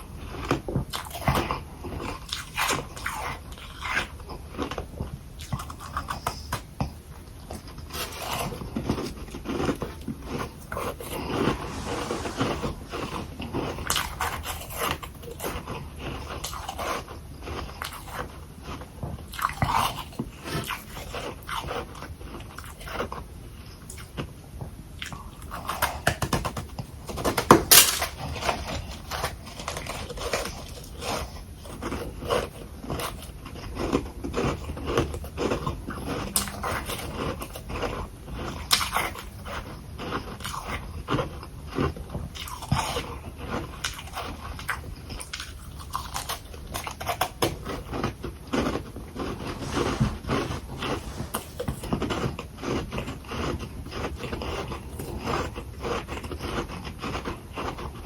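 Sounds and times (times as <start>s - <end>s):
person chewing crunchy frost: 0.0s - 24.3s, 27.7s - 58.0s.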